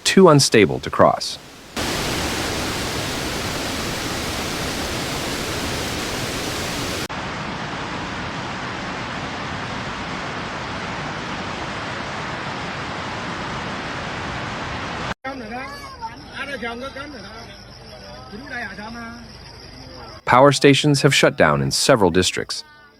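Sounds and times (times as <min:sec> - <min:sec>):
floodwater rushing: 0:00.0 - 0:15.2.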